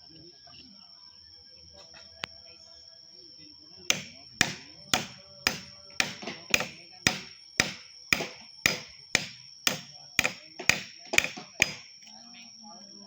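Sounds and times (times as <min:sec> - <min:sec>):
mallet striking chisel into wood: 0:03.9 - 0:11.9.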